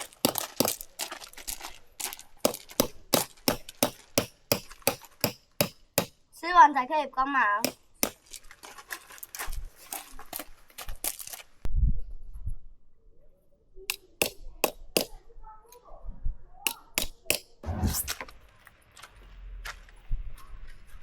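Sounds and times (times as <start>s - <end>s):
small hard objects clacking: 0.0s - 5.8s, 7.7s - 11.7s.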